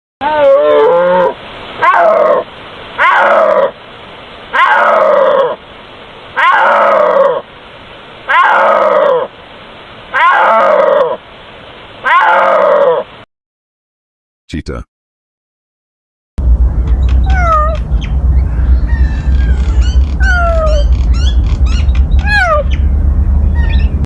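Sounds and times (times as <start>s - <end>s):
snow leopard calling: 0.2s - 3.8s, 4.5s - 7.5s, 8.2s - 9.4s, 10.1s - 11.3s, 12.0s - 13.2s, 18.7s - 22.9s.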